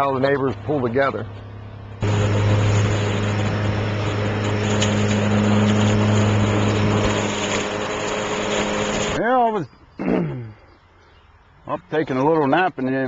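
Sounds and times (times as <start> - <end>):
engine running steadily: 0.0 - 9.2.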